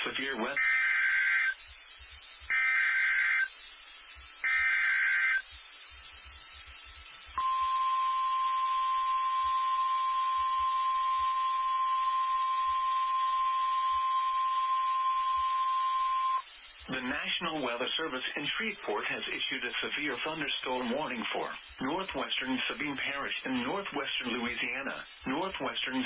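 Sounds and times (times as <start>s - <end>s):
steady warning alarm tone: 0.0s - 16.5s
warbling digital data tones: 0.0s - 18.0s.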